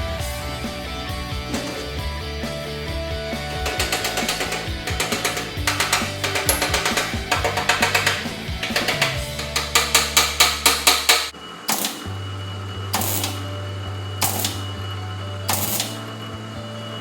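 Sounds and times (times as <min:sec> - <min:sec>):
drum hits: 0:03.4 - 0:11.3.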